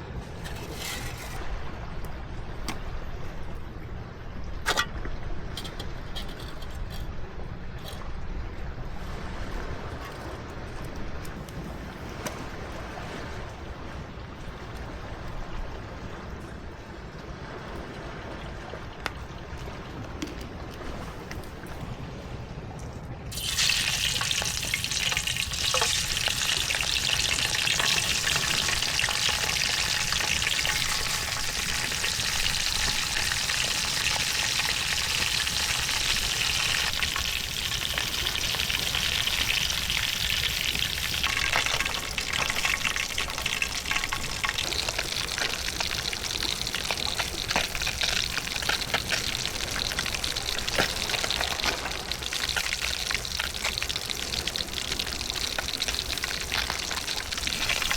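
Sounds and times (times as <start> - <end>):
food sizzling: 23.3 - 57.9.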